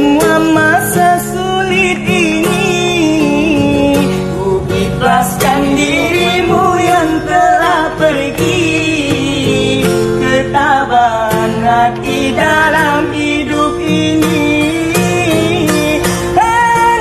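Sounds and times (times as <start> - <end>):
instrumental backing: 0.0 - 17.0
person singing long notes: 0.0 - 17.0.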